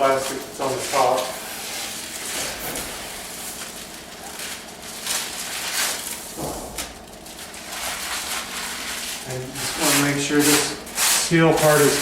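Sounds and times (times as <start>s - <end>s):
plastic film peeling and crinkling: 0.0s - 12.0s.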